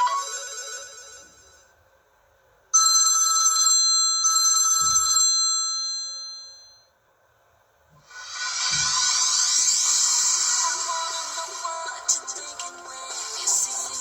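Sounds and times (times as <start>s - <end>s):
phone bell ringtone: 0.0s - 1.7s, 2.8s - 6.9s.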